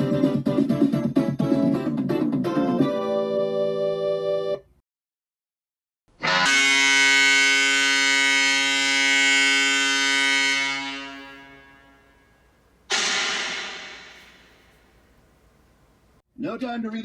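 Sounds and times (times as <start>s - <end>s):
goal horn blast: 6.2s - 12.3s, 12.9s - 14.8s.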